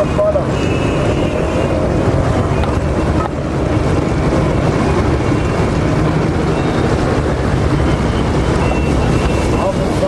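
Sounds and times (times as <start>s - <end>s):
steady rumbling noise: 0.0s - 10.0s.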